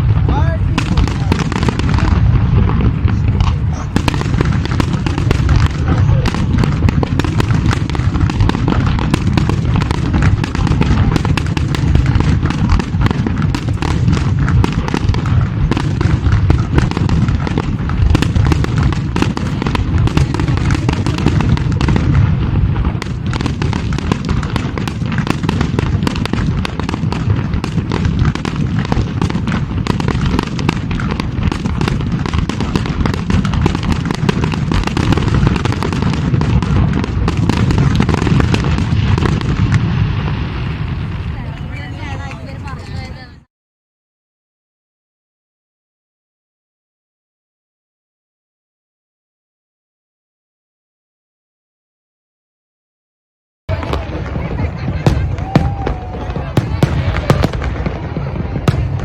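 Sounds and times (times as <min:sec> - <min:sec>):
fireworks booming and crackling: 0:00.0 - 0:43.5, 0:53.7 - 0:59.0.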